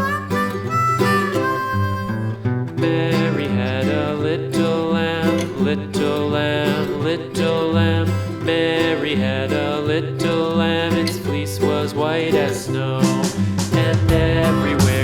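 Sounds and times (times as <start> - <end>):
harmonica melody: 0.0 - 5.6, 13.1 - 15.0
strummed acoustic guitar: 0.0 - 15.0.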